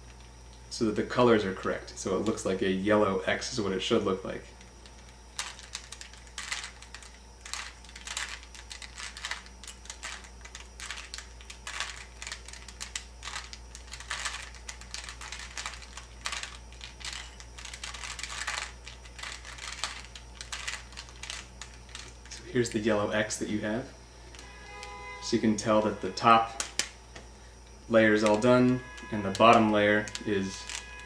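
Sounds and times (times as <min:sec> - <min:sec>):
puzzle cube clicking: 0:04.9 - 0:22.4.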